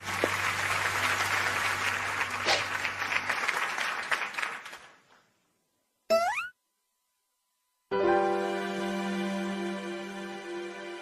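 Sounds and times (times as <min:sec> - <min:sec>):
audience applauding: 0:00.0 - 0:05.1.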